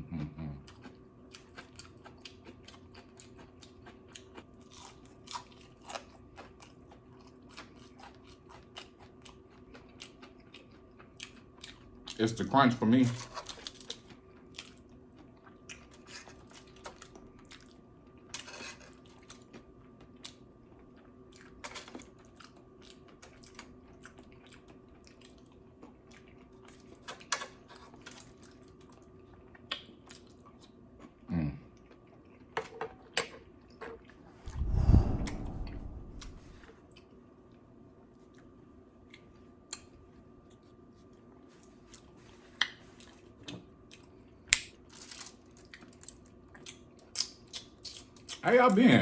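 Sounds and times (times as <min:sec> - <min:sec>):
close chewing: 0:00.6 - 0:12.2, 0:13.2 - 0:31.1.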